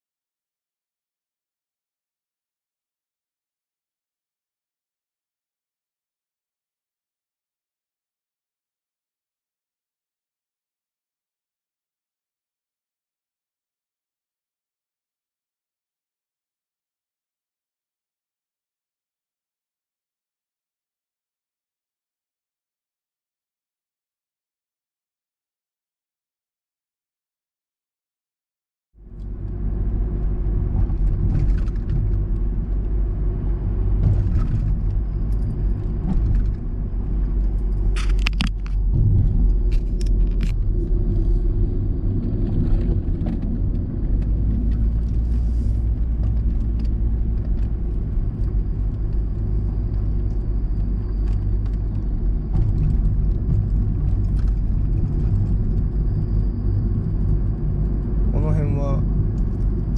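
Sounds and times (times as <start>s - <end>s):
car road and engine rumble: 29.0s - 59.9s.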